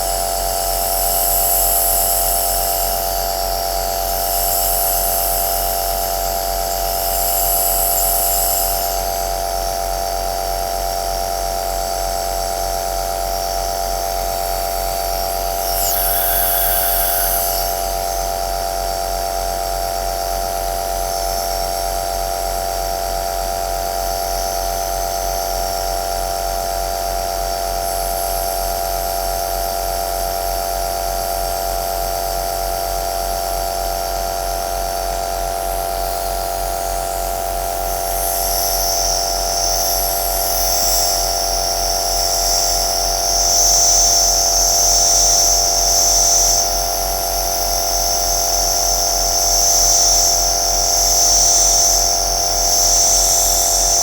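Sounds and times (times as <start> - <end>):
nebulizer motor hum: 14.2 - 18.7
hiss of air and mist: 15.4 - 18.4.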